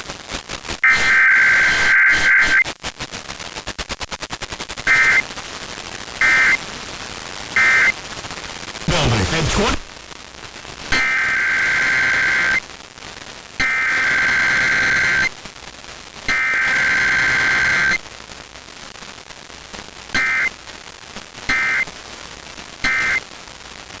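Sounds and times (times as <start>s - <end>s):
faint static: 8.9s - 9.9s.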